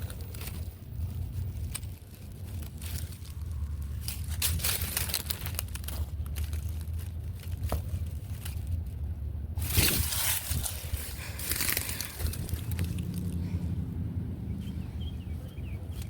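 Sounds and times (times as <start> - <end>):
footsteps crunching through dry leaves: 0.0 - 8.9, 9.6 - 13.5
steady low rumble: 0.0 - 16.0.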